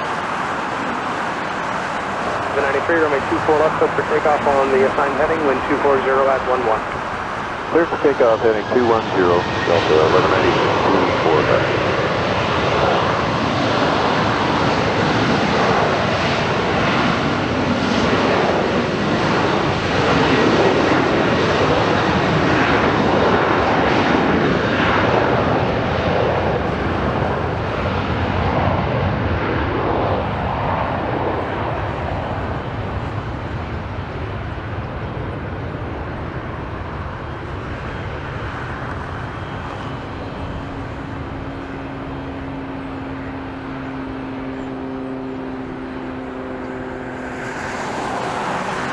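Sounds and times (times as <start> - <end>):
jet engines rumbling: 0.0 - 48.9.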